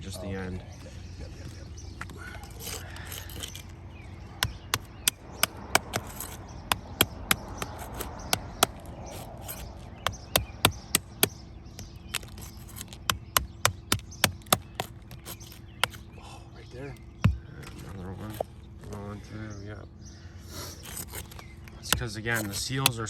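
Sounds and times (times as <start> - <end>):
roofing tool tapping on shingles: 4.4 - 16.2, 20.8 - 23.0.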